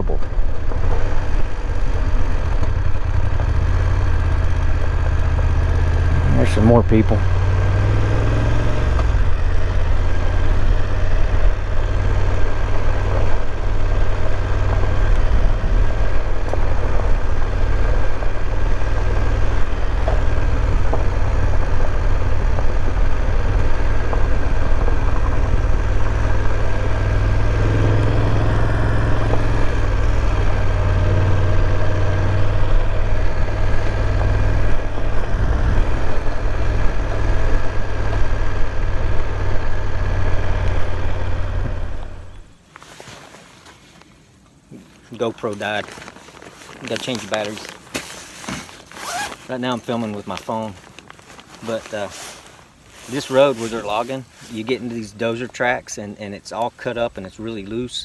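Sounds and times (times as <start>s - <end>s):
motorcycle engine running: 0.0s - 42.6s
road noise: 0.0s - 57.9s.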